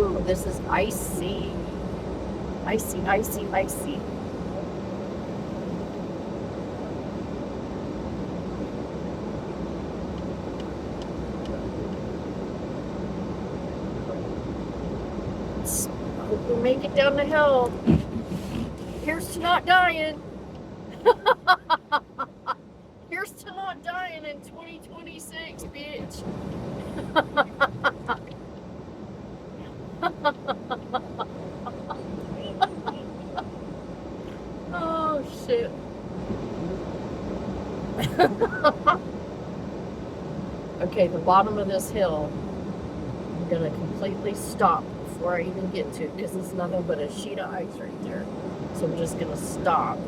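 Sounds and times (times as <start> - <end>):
car engine and tyre rumble: 0.0 - 50.0
person laughing: 21.0 - 22.6, 26.8 - 28.3, 30.0 - 33.5, 38.0 - 39.0.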